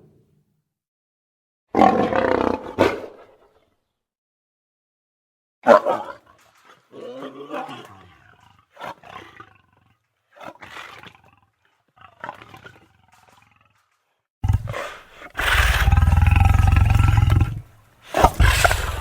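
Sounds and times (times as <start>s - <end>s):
lion grunting calls: 14.4s - 19.0s
lion roaring: 14.4s - 19.0s.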